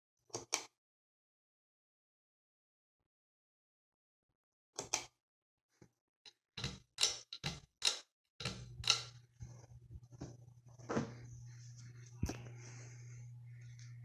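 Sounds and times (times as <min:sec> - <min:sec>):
pull-chain switch clicks: 0:06.6 - 0:09.2
fan motor humming: 0:08.4 - 0:14.0.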